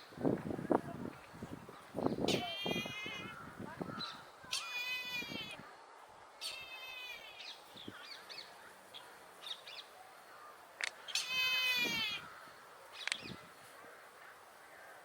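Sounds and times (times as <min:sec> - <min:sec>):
bird of prey mewing call: 0:02.2 - 0:05.6, 0:06.4 - 0:08.1, 0:11.1 - 0:12.5
sharp clicks: 0:10.8 - 0:11.0.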